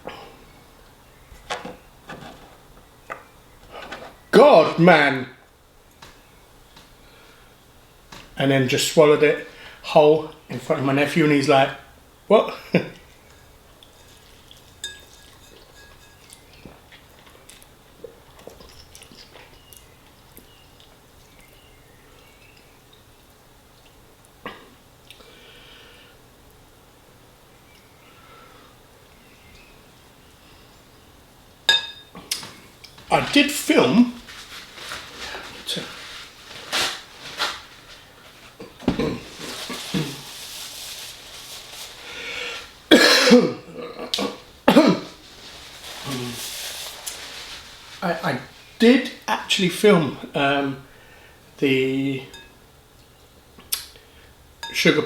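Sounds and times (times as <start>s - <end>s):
fork clinking on plate: 14.8s - 16.4s.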